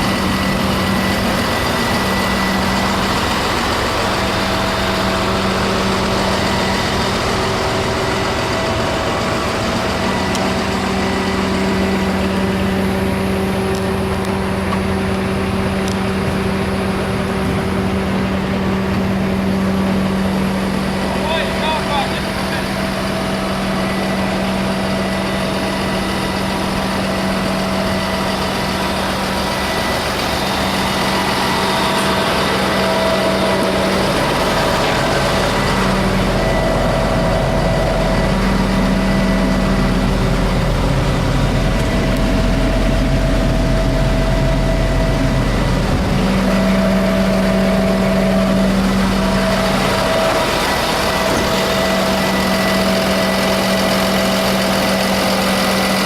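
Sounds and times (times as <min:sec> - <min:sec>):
diesel engine idling: 0:00.0 - 0:56.0
deep low rumble: 0:32.8 - 0:50.4.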